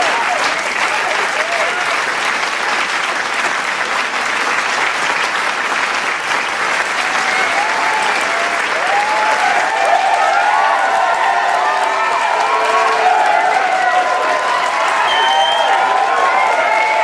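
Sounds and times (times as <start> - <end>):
crowd cheering and whooping: 0.0 - 2.0, 6.7 - 17.0
crowd applauding: 0.0 - 17.0.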